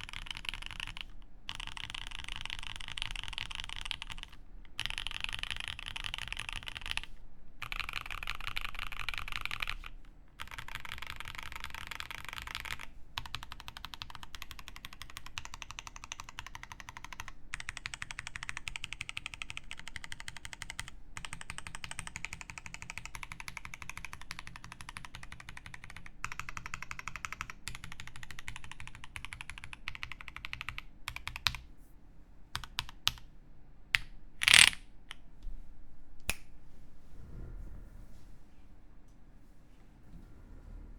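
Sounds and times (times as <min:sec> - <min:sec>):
mechanical keyboard typing: 0:00.0 - 0:31.6, 0:32.6 - 0:33.2, 0:34.4 - 0:34.8.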